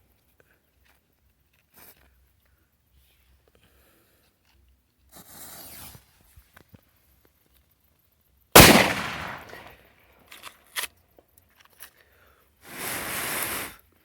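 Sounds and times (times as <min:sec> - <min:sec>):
firecracker bang: 0:08.6 - 0:09.6
small sharp cracks: 0:08.6 - 0:09.7.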